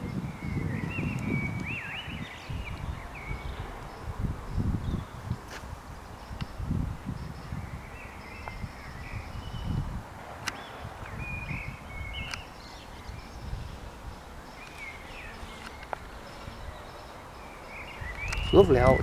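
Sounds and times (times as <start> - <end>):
small birds chirping: 0.0 - 19.0
sharp clicks: 10.4 - 10.6, 12.2 - 12.5, 18.1 - 19.0.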